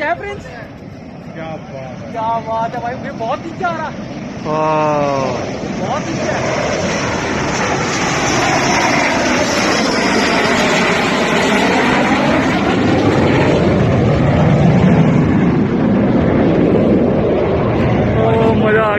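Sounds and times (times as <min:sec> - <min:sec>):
jet flying low overhead: 0:00.0 - 0:18.9.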